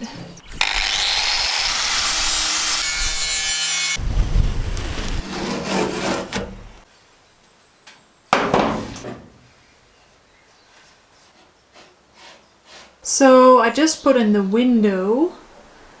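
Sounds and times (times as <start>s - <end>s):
jigsaw cutting sheet metal: 0.5s - 4.0s, 4.6s - 6.8s
scraping and rubbing on metal: 2.8s - 6.8s, 8.5s - 9.5s.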